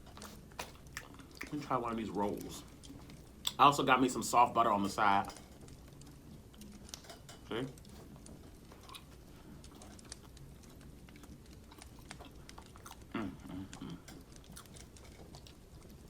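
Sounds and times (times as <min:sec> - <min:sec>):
wet chewing mouth clicks: 0:00.1 - 0:01.7, 0:06.0 - 0:16.0
person humming: 0:07.5 - 0:07.8, 0:13.1 - 0:14.1.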